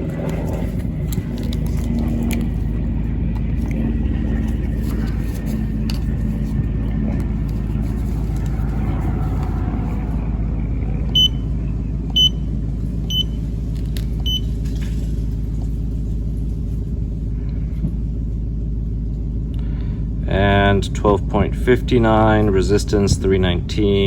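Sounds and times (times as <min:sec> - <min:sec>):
car engine idling: 0:00.0 - 0:24.0
battery tester beeps: 0:11.2 - 0:11.4, 0:12.1 - 0:12.5, 0:13.1 - 0:13.4, 0:14.2 - 0:14.5.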